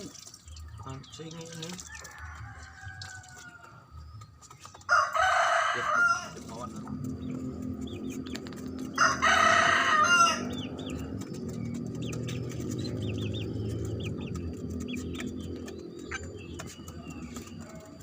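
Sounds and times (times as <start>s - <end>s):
lovebirds chirping: 0.0s - 18.0s
rooster crowing: 1.9s - 3.8s, 4.9s - 6.5s, 8.9s - 11.0s
steady low hum: 6.3s - 18.0s.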